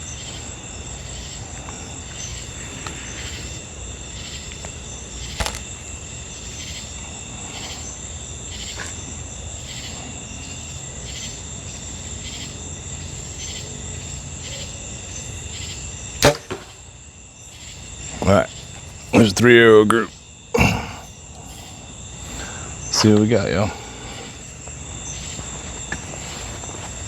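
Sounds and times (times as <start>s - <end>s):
crickets and insects trilling: 0.0s - 27.0s.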